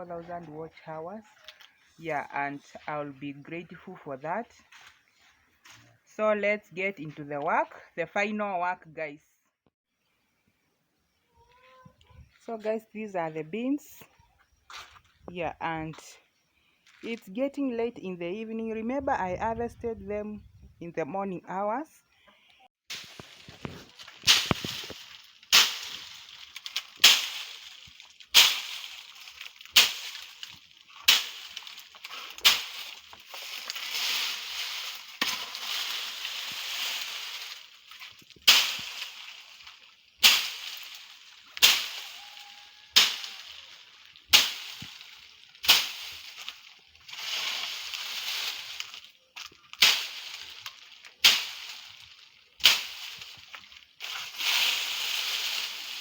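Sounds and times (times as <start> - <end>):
rustling of pods and beans: 0.0 - 7.9, 11.6 - 20.5, 22.4 - 56.0
stick whacking bean plants: 22.9 - 56.0.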